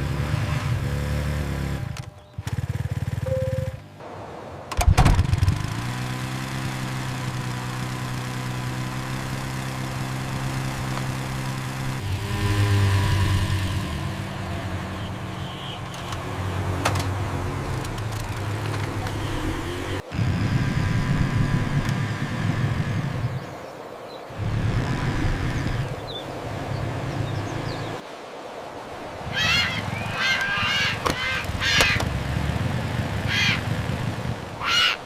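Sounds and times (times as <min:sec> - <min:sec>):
small scooter engine running: 0:00.0 - 0:03.8, 0:04.9 - 0:15.4, 0:17.6 - 0:23.5, 0:24.4 - 0:26.1, 0:31.0 - 0:34.6.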